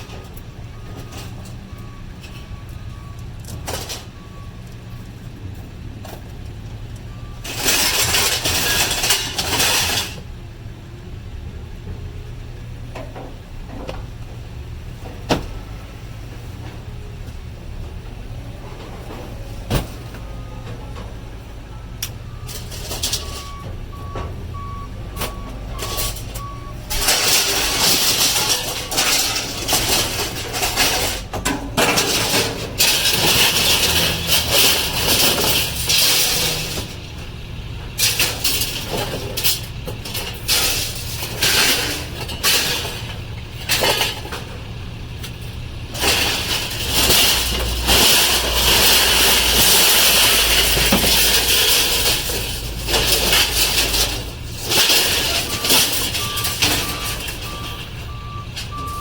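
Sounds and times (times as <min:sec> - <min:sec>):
truck engine running: 0:00.0 - 0:59.0
beeps: 0:21.6 - 0:27.0.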